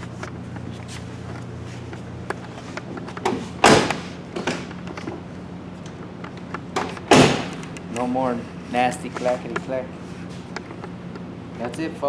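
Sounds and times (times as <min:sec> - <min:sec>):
car door thudding shut: 0:03.2 - 0:04.8, 0:06.8 - 0:07.8
door hinge clicks and knocks: 0:03.2 - 0:05.2, 0:06.5 - 0:07.9.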